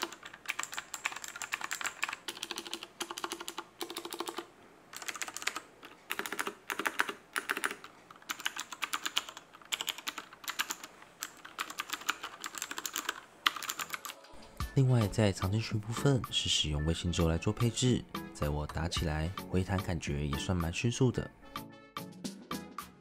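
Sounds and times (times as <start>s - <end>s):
clicky mechanical keyboard typing: 0.0s - 14.3s.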